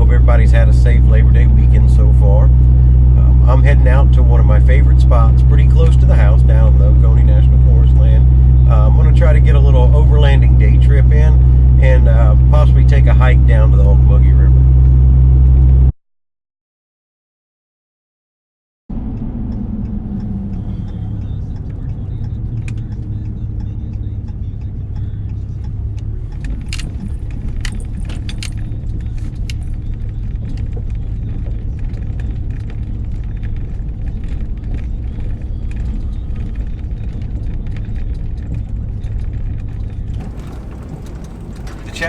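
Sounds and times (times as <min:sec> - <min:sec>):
vehicle engine and road noise: 0:00.0 - 0:15.9, 0:18.9 - 0:42.0
loose items rattling: 0:40.2 - 0:42.0.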